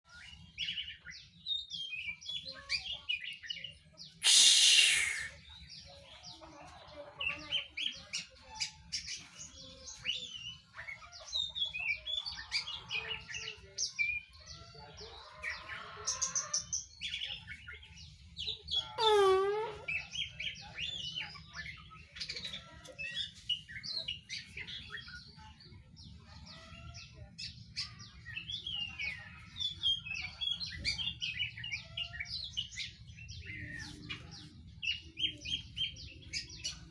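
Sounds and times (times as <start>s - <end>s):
swooping bird call: 4.2s - 5.4s, 19.0s - 19.8s
bird chirps and twitters: 15.5s - 36.9s.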